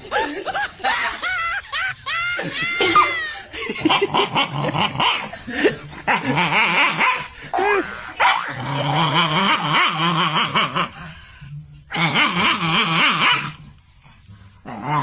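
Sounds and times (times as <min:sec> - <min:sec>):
dog growling: 0:00.2 - 0:15.0
dog barking and yelping: 0:06.0 - 0:10.8, 0:11.8 - 0:13.8.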